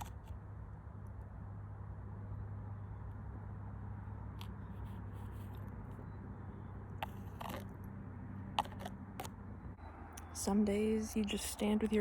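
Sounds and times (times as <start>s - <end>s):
low hum: 0.0s - 12.0s
knife scraping wooden stick: 7.0s - 7.8s, 8.6s - 9.3s.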